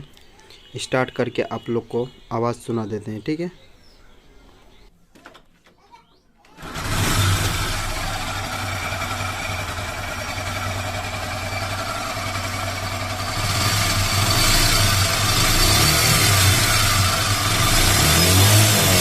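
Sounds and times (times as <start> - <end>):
motorcycle engine idling and revving: 6.6 - 19.0.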